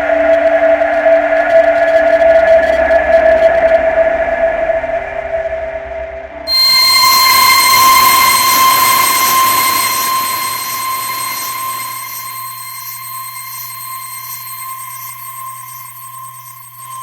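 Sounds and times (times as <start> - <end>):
high electronic tone: 6.5 - 17.0
low hum: 6.5 - 17.0.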